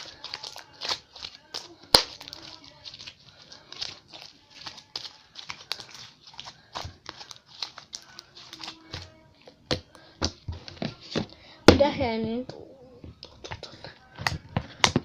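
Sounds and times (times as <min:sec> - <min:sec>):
slime squeezed crackling and popping: 0:00.0 - 0:03.2.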